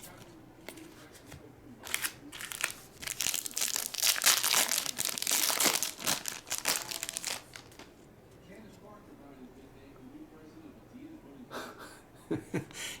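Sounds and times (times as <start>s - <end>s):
plastic wrapper crinkling: 1.8s - 7.9s.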